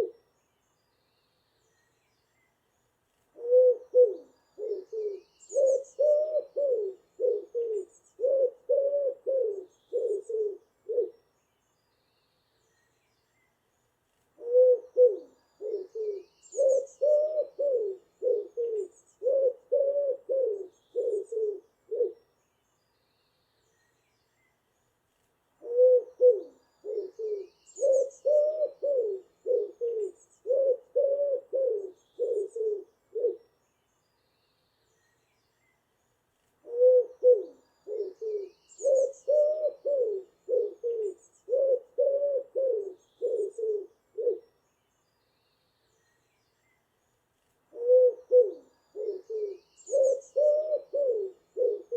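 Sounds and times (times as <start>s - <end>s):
pigeon cooing: 3.4s - 11.2s, 14.4s - 22.2s, 25.6s - 33.4s, 36.6s - 44.4s, 47.7s - 51.9s.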